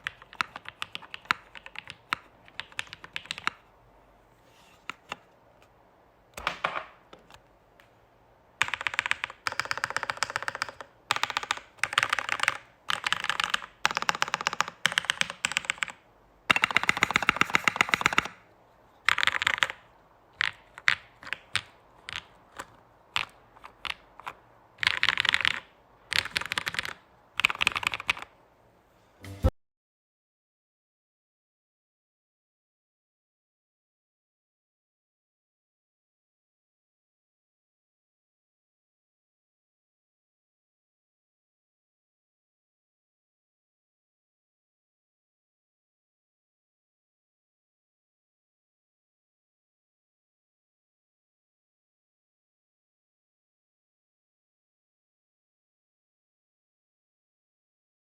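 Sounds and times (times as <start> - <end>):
mechanical keyboard typing: 0.0 - 3.7, 8.6 - 18.4, 19.0 - 19.8, 20.4 - 28.3.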